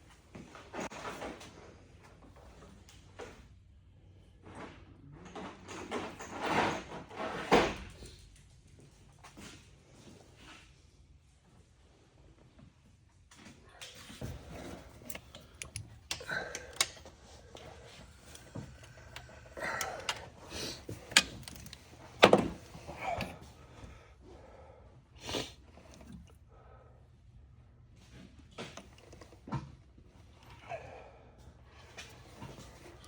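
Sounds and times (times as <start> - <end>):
hand tools clinking on metal: 14.9 - 21.9.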